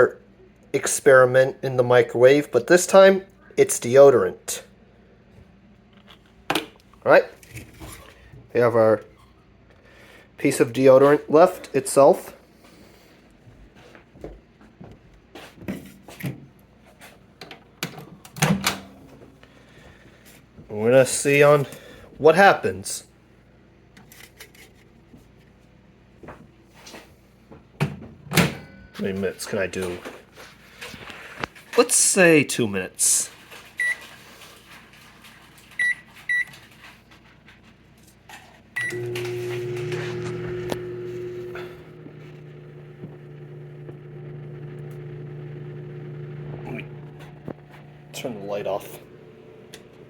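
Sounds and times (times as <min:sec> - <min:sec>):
microwave keypad beeping: 0:38.8 - 0:45.5
microwave oven running hum: 0:38.8 - 0:50.0.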